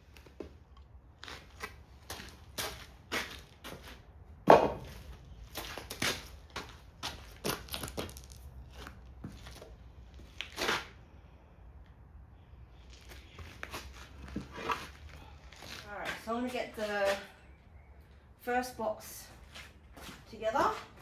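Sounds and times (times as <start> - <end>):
timber knocking and scraping: 4.5 - 5.1.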